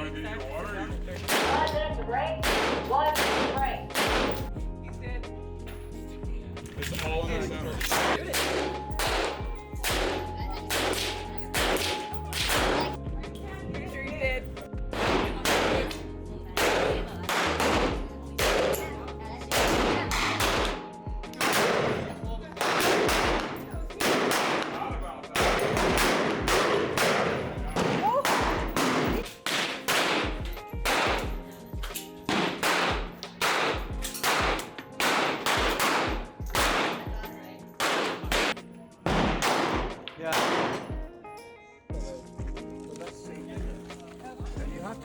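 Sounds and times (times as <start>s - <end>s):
gunshots with ringing tail: 1.3s - 1.7s, 2.4s - 4.6s, 7.8s - 13.0s, 14.9s - 31.5s, 32.3s - 37.2s, 37.8s - 41.1s
music with heavy beat: 19.5s - 40.0s.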